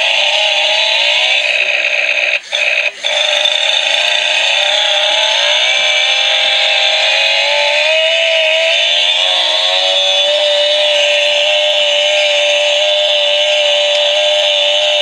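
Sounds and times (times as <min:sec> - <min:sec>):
toy chainsaw engine sound: 0:00.0 - 0:15.0.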